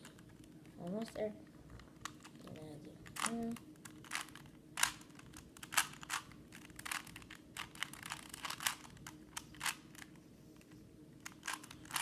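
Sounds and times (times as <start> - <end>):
plastic puzzle cube clicking: 3.0 - 10.1, 11.2 - 12.0.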